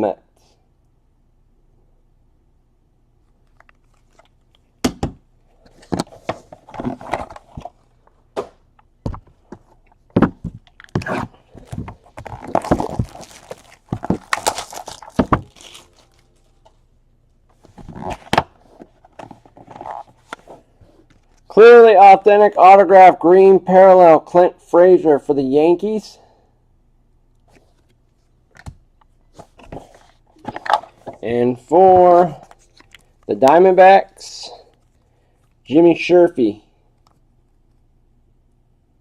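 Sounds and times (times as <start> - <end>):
packaging crinkling: 10.6 - 16.7.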